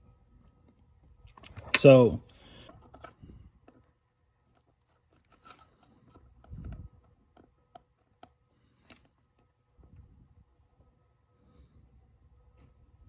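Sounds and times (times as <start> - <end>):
small clicks and taps: 4.5 - 9.5.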